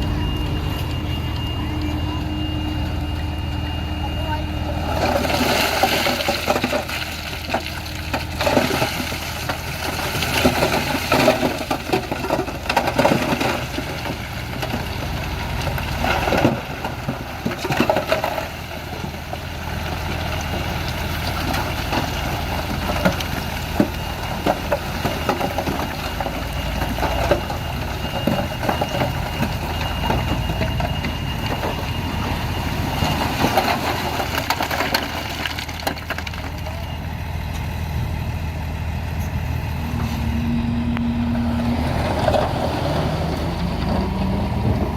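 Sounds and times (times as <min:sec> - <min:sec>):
heavy diesel engine running: 0:00.0 - 0:44.9
knocks clanks and crunching: 0:04.8 - 0:37.7.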